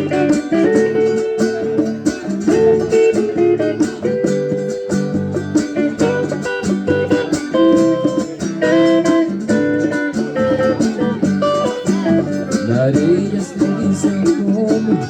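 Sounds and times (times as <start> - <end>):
guitar melody: 0.0 - 15.0
steady drum beat: 0.0 - 15.0.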